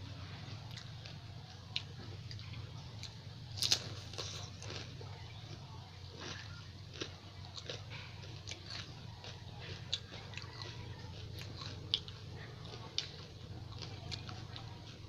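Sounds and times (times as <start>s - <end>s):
crisp shells crunching: 3.6s - 5.5s.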